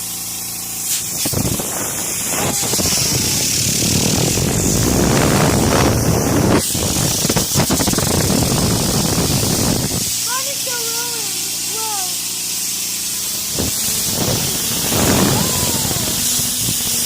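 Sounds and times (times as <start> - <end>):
compressed air blow gun hissing: 0.0 - 17.0.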